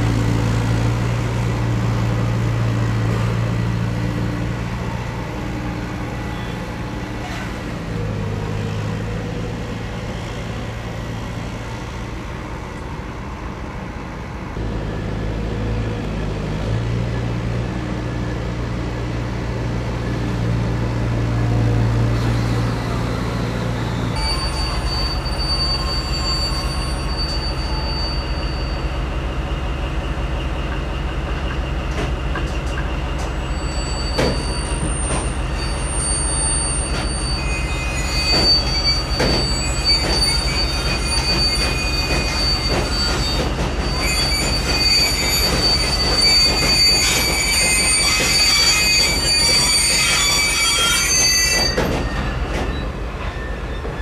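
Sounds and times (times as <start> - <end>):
locomotive brakes squealing: 5.7 - 8.0, 22.1 - 54.0.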